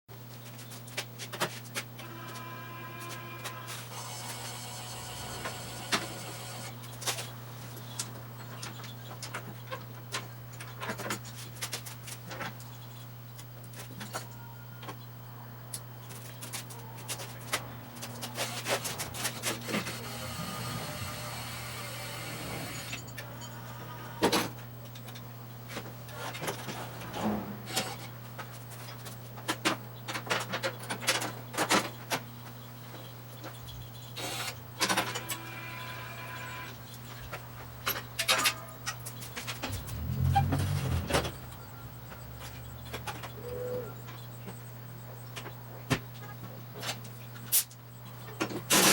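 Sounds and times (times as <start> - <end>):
steady low hum: 17.3 - 29.4.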